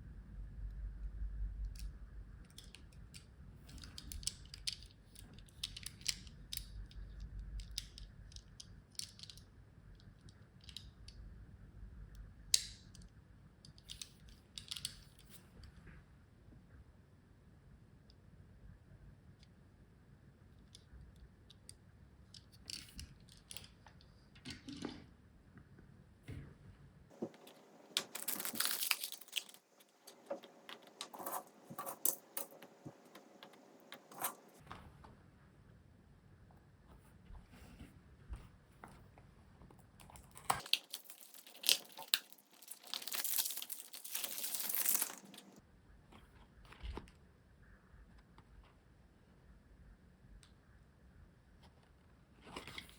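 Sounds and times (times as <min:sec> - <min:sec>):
wrapping tearing and crinkling: 0:27.1 - 0:34.6, 0:40.4 - 0:45.6
toy car and packaging clicks: 0:27.2 - 0:34.6, 0:40.4 - 0:45.6.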